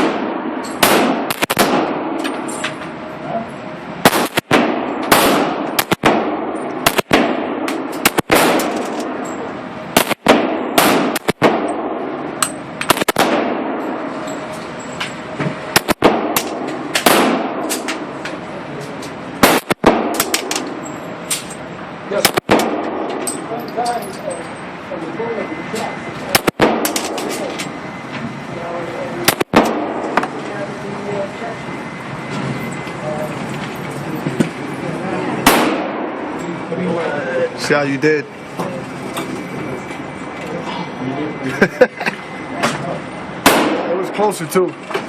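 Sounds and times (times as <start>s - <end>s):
gunshots with echo: 0.0s - 2.2s, 4.0s - 9.2s, 10.0s - 12.2s, 12.9s - 13.9s, 15.8s - 17.8s, 19.4s - 20.6s, 22.2s - 23.2s, 26.3s - 27.2s, 29.2s - 30.2s, 35.4s - 36.3s, 43.4s - 44.0s.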